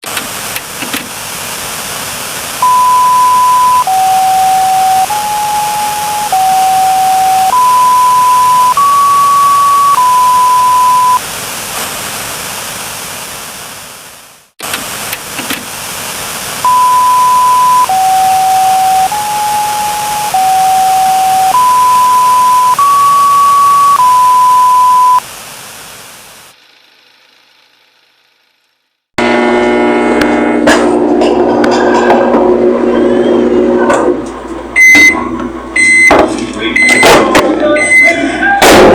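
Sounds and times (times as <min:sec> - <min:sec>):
static hiss: 0:00.0 - 0:28.4
electronic beep tone melody: 0:02.6 - 0:11.2, 0:16.6 - 0:25.2, 0:34.8 - 0:35.2, 0:35.8 - 0:36.1, 0:36.8 - 0:37.2, 0:37.8 - 0:38.2.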